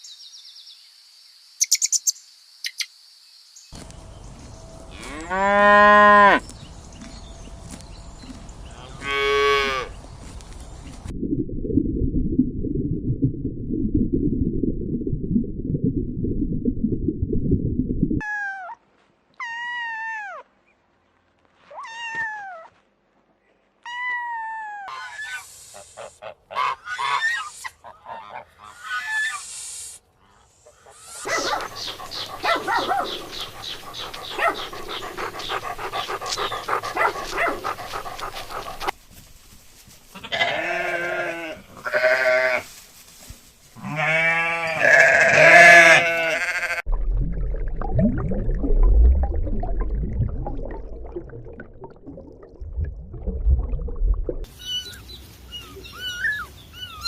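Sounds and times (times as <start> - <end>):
farm animal calls: 30.2 - 38.9, 43.8 - 46.8.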